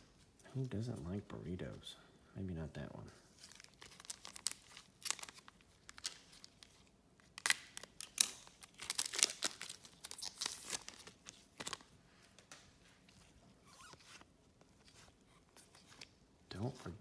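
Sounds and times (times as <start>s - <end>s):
foil wrapping rustling and tearing: 3.4s - 11.9s.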